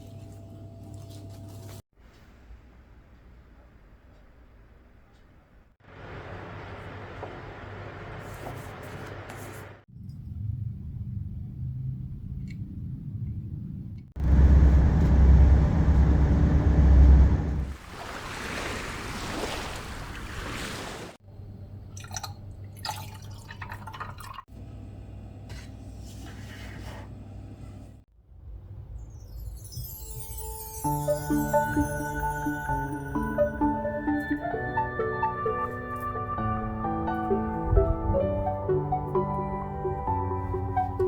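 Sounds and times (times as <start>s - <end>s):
deep water rumble: 14.2s - 21.2s
sea water rushing: 16.8s - 21.2s.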